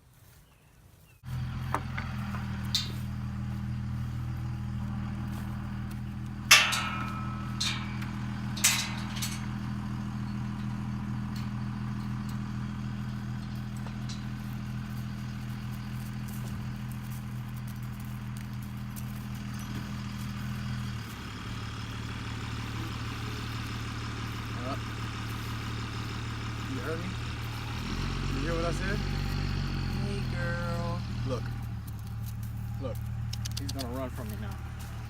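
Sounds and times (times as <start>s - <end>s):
engine running steadily: 1.2s - 35.0s
sharp knocks and clanks: 6.4s - 9.7s.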